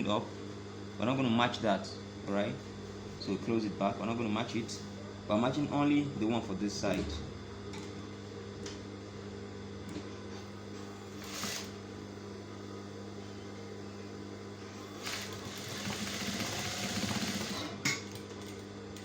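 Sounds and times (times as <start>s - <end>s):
sewing machine stitching: 11.2s - 11.8s, 14.9s - 17.8s.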